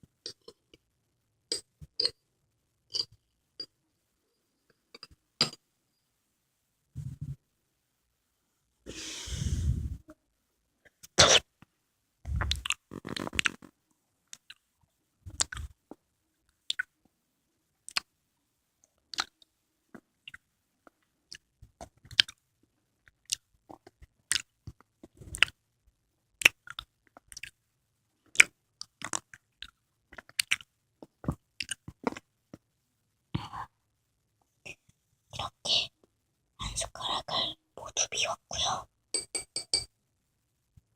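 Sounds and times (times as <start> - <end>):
person chewing jelly: 1.5 - 2.2, 2.9 - 3.7, 12.3 - 13.7, 14.3 - 14.7, 15.3 - 15.8, 16.6 - 17.0, 17.8 - 18.1, 19.1 - 22.4, 23.0 - 25.6, 26.4 - 27.6, 28.2 - 32.6.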